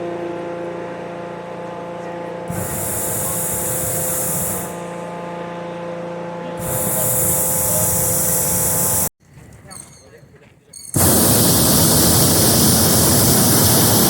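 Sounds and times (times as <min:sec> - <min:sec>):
steady hum: 0:00.0 - 0:09.1, 0:11.0 - 0:14.0
propane burner hissing roar: 0:02.5 - 0:05.4, 0:06.4 - 0:09.1, 0:11.0 - 0:14.0.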